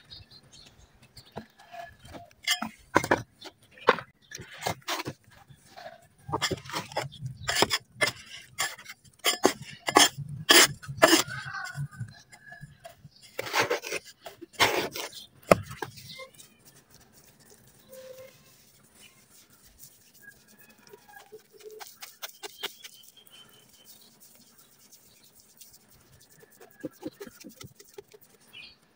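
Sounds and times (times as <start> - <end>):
hands slapping wet dirt: 19.5 - 28.4.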